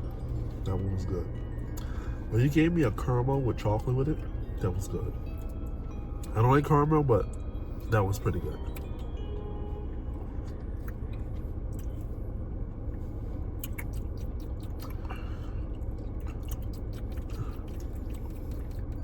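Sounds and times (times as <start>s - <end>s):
steady low hum: 0.0s - 19.0s
chewing ice cream: 8.6s - 9.1s, 10.2s - 12.2s, 12.9s - 19.0s.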